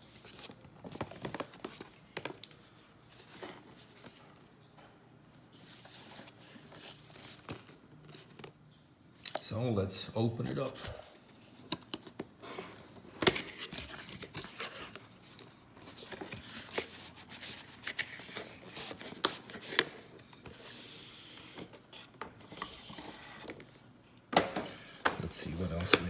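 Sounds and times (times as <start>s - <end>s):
cardboard rustling: 0.1s - 2.2s, 10.6s - 23.8s, 25.2s - 26.0s.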